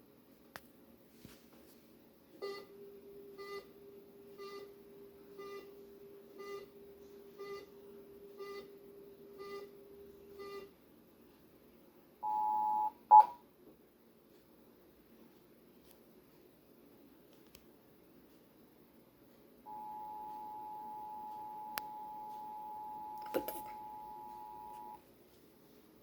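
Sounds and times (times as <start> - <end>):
short beeps: 12.2 - 13.4, 19.7 - 25.0
two-tone attention signal: 12.2 - 13.4, 19.7 - 25.0.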